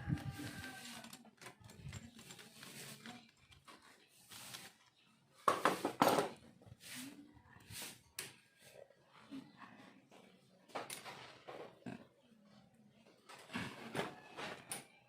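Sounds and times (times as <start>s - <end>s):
scraping rustle: 0.0s - 4.8s.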